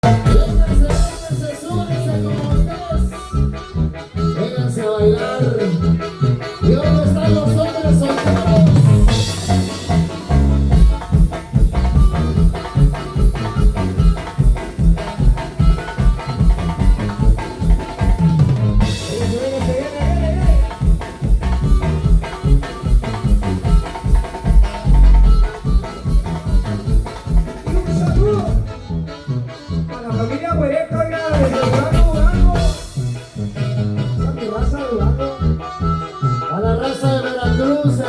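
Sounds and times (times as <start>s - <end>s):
dance music with drums and bass: 0.0s - 3.2s, 6.7s - 28.8s, 31.0s - 33.4s.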